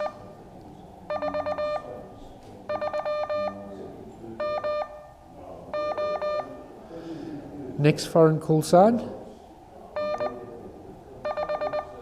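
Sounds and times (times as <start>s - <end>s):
morse code beeps: 0.0s - 0.2s, 1.1s - 2.0s, 2.7s - 3.7s, 4.4s - 5.2s, 5.8s - 6.6s, 10.0s - 10.5s, 11.2s - 12.0s.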